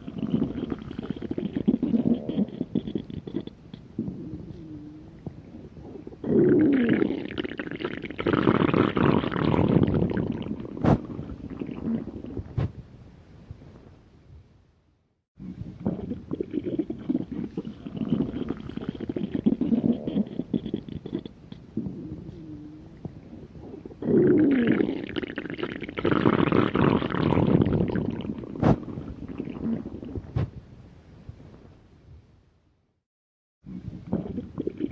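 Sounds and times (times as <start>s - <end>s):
stomach growling: 0.0s - 12.8s, 15.4s - 30.6s, 33.7s - 34.9s.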